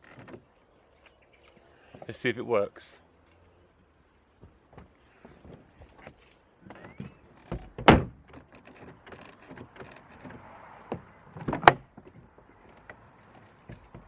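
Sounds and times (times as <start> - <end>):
car door latch clunks: 6.8 - 8.4.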